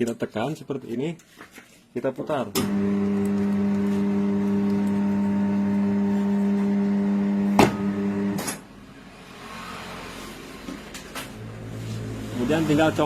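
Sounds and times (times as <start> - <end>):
electric motor humming: 2.6 - 8.4.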